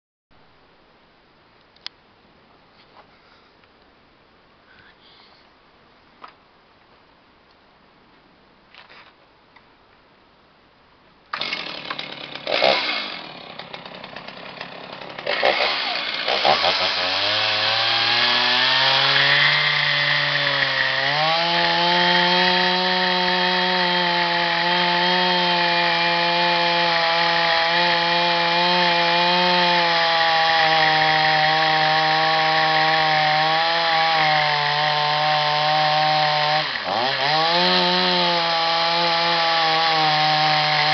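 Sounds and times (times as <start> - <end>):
chainsaw engine running: 11.3 - 40.9.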